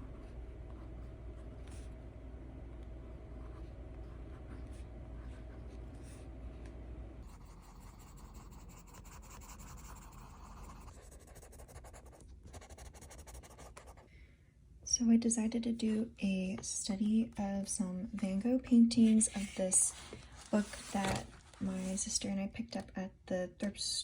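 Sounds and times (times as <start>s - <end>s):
pencil scratching on paper: 7.2s - 14.0s.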